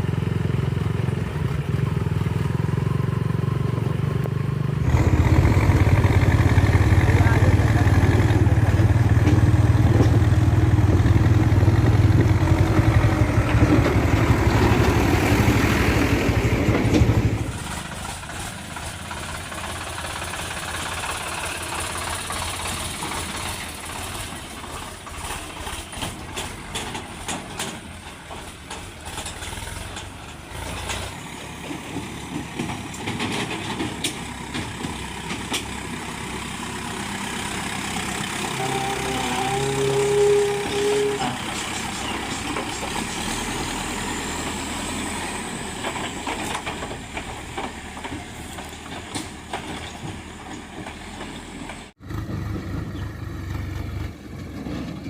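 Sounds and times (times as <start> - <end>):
diesel machinery engine running: 0.0 - 55.0
metal clanks and knocks: 25.2 - 35.8, 45.8 - 51.9.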